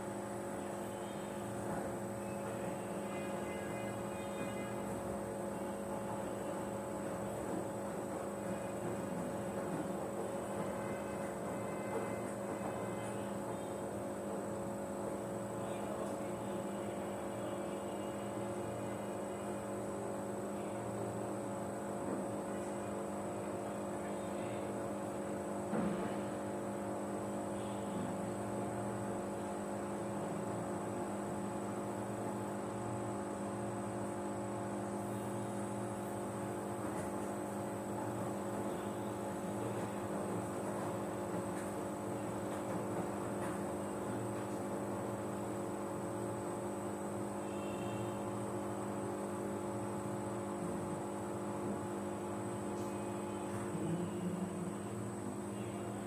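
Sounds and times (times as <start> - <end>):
washing machine motor hum: 0.0 - 56.0
brief knock: 25.7 - 26.2.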